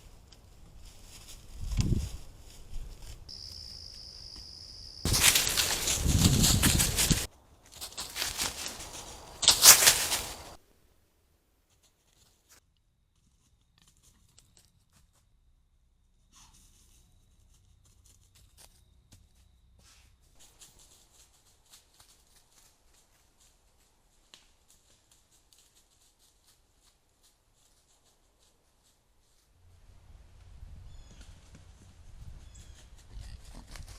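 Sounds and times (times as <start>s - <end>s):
faint clicks and rustles: 0.0s - 3.3s, 5.1s - 10.6s, 20.4s - 29.6s.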